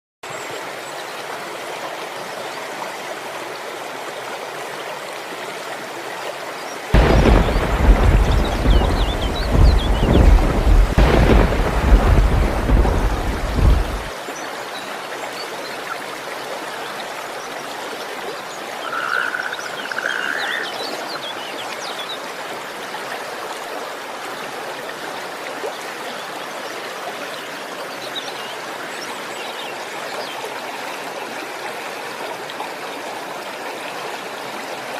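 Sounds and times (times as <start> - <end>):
steady rain: 5.3 - 25.8
frogs croaking: 7.0 - 14.1, 18.8 - 20.9
thunder rumbling: 7.0 - 14.1.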